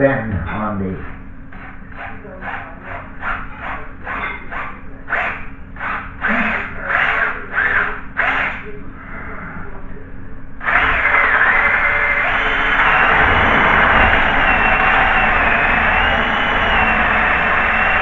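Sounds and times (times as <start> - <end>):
power drill boring through wood: 1.6 - 8.7, 10.6 - 18.0.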